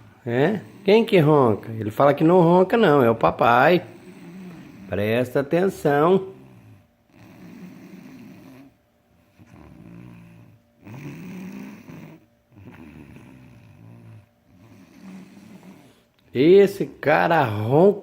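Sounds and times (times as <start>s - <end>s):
boy snoring: 0.0s - 1.7s, 3.5s - 16.0s.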